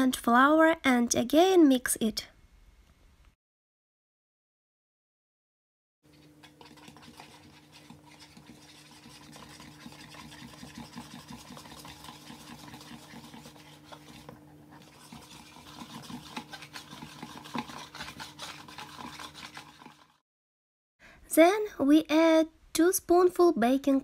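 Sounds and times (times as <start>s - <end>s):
wire whisk beating batter: 6.1s - 20.2s.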